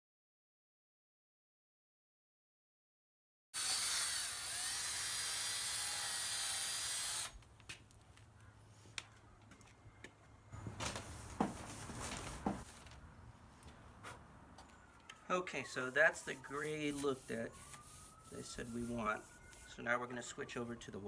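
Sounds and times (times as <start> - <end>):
electric drill whining: 3.6 - 7.4.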